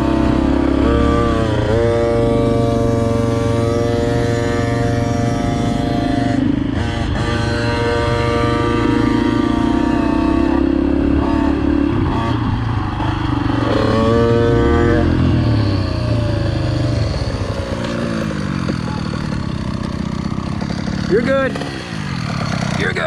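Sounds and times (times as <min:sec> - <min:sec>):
dirt bike engine revving: 0:00.0 - 0:23.0.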